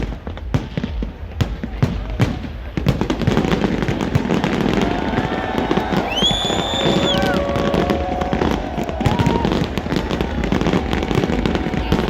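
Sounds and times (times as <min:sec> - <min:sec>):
fireworks bangs and crackling pops: 0:00.0 - 0:12.0.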